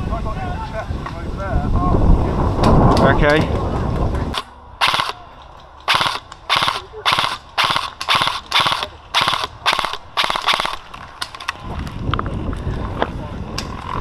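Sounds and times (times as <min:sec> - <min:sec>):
airsoft gun full-auto bursts: 0:04.4 - 0:05.2, 0:05.9 - 0:10.9.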